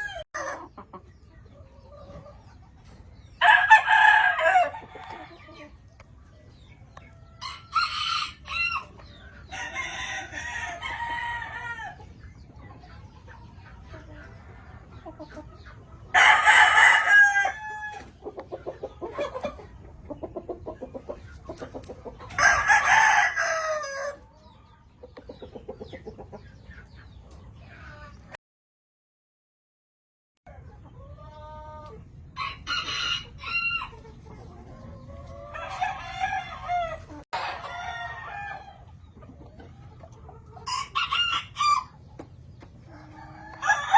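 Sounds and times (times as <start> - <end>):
roosters crowing: 0.0 - 0.7, 2.8 - 5.7, 7.2 - 12.2, 16.0 - 18.2, 21.5 - 24.4, 32.2 - 39.0, 40.6 - 42.1, 42.8 - 43.9
rooster clucking: 0.0 - 6.0, 7.0 - 28.4, 30.5 - 43.9.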